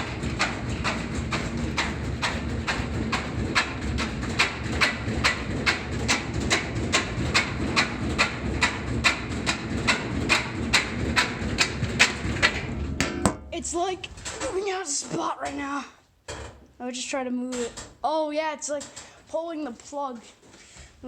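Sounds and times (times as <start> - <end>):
washing machine drum knocking: 0.0 - 13.9
washing machine low rumble: 0.0 - 15.4.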